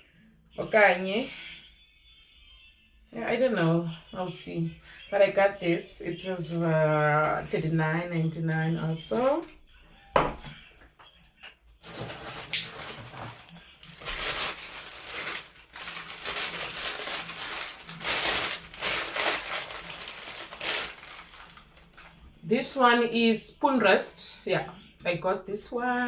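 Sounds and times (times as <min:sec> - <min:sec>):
packaging crinkling and rustling: 0:11.8 - 0:22.2.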